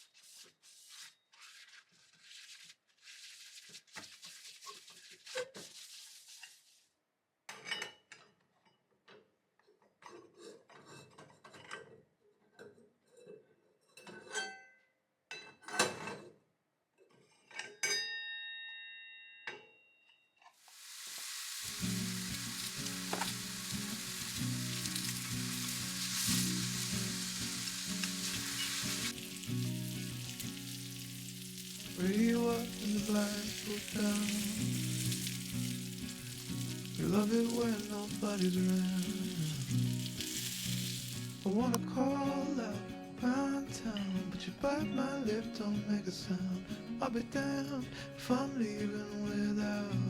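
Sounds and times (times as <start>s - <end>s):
food sizzling in a frying pan: 20.6s - 41.8s
utensils and dishes clinking: 20.9s - 41.5s
background music: 21.2s - 50.0s.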